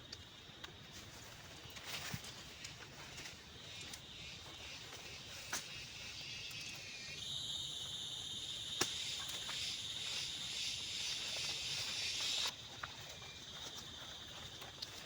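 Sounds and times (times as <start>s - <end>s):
high-pitched insect buzz: 3.7s - 12.5s.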